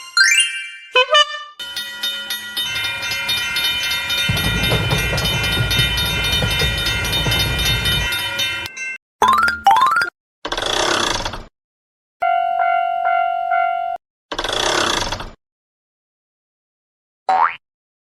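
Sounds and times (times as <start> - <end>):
fast even clatter: 2.6 - 8.7.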